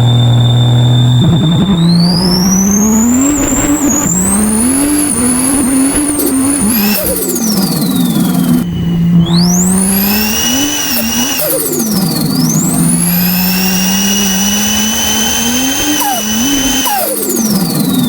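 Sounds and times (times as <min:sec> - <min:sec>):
truck engine revving: 0:00.0 - 0:18.0
turbo whistle whine: 0:00.0 - 0:18.0.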